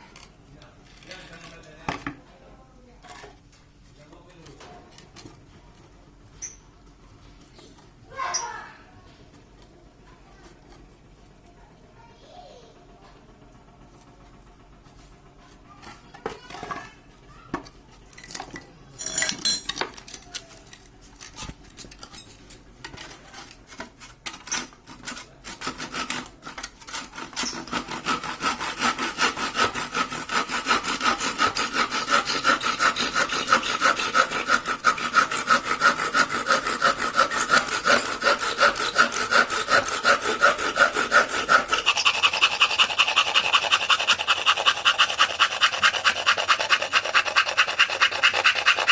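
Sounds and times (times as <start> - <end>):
hand saw cutting wood: 23.1 - 48.9.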